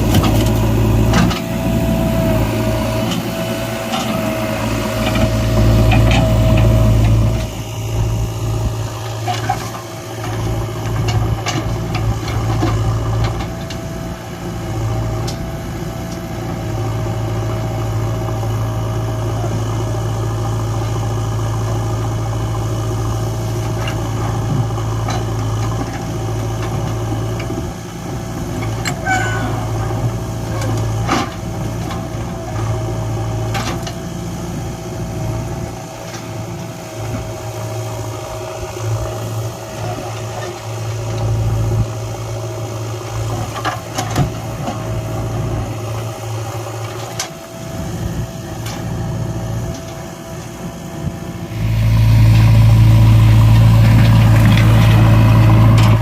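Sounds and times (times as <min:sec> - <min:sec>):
steady whine: 0:00.0 - 0:26.0, 0:46.8 - 0:56.0
diesel engine running: 0:00.0 - 0:56.0.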